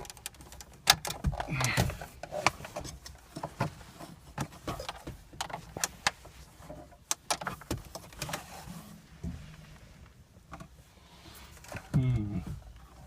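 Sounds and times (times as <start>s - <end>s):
clicks and rattles of plastic parts: 0.0s - 3.7s, 4.3s - 8.4s.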